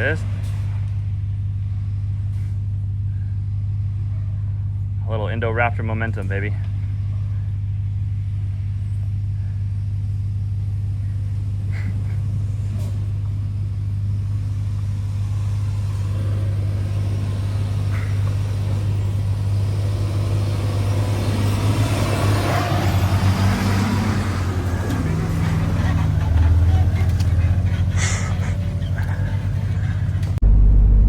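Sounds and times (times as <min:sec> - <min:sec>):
truck climbing rocky trail: 0:10.9 - 0:30.4
pickup truck engine idling: 0:10.9 - 0:31.0.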